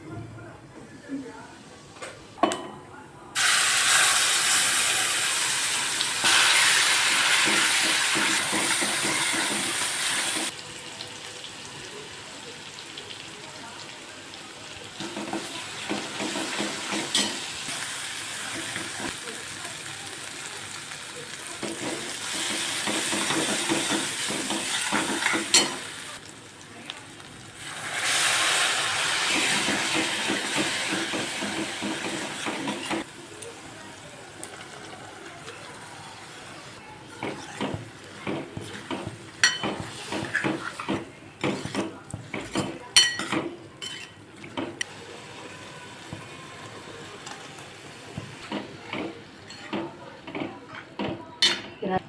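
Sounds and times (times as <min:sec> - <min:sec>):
food sizzling in a hot pan: 0:03.4 - 0:40.8, 0:44.8 - 0:49.6
spoon scraping against a pot: 0:37.2 - 0:44.2.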